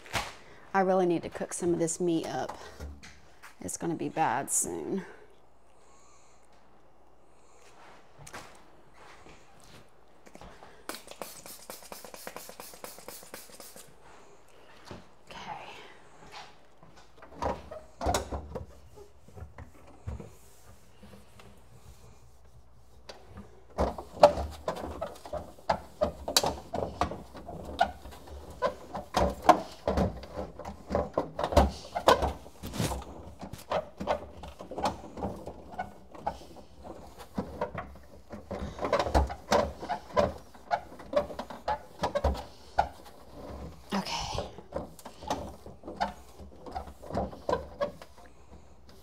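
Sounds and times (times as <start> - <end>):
plastic containers knocking and rattling: 23.3 - 48.6.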